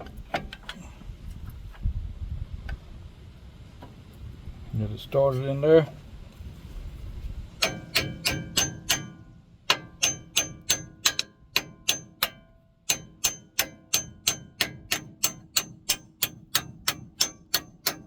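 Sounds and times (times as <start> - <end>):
hammer striking metal: 7.6 - 18.0.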